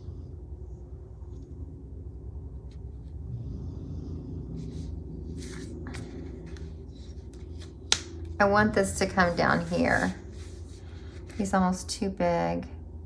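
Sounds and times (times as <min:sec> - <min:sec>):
helicopter rumble: 0:08.2 - 0:12.1.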